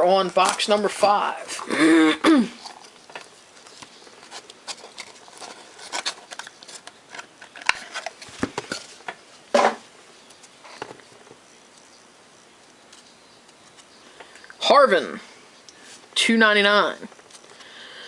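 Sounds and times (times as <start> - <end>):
cardboard and wrapper rustling: 0.2 - 1.8, 2.6 - 9.2.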